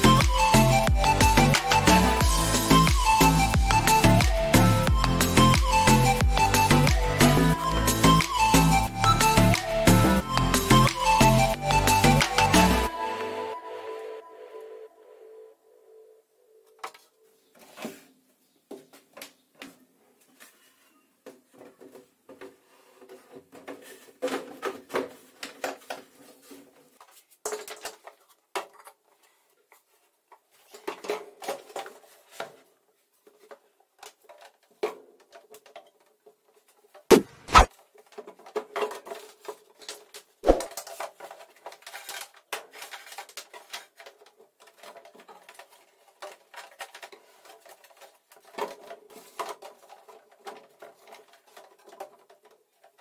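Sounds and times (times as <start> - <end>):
clicks taps and rattles of parts: 21.2 - 32.6, 33.2 - 37.1, 37.7 - 53.0.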